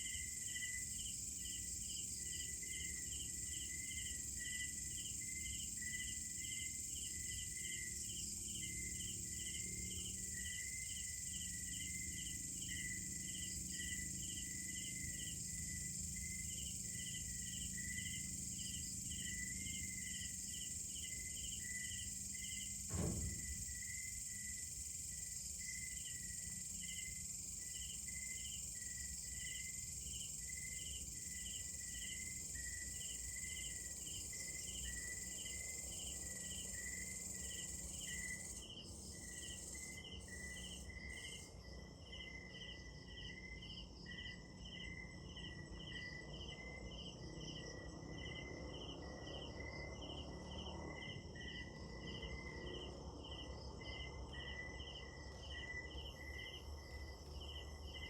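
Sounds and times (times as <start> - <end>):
crickets chirping: 0.0 - 58.0
short low thud: 22.9 - 23.8.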